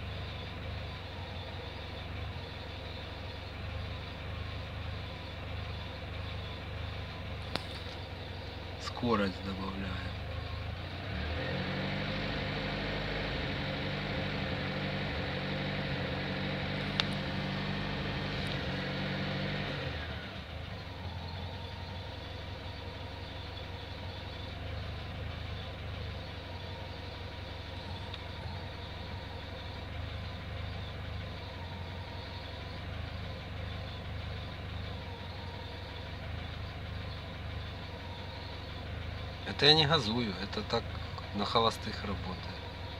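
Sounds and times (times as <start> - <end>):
faint high whine: 0.0 - 11.5, 12.3 - 42.9
alternator humming: 0.0 - 42.9
car engine idling: 0.0 - 42.9
click: 7.5 - 8.0, 16.8 - 17.2.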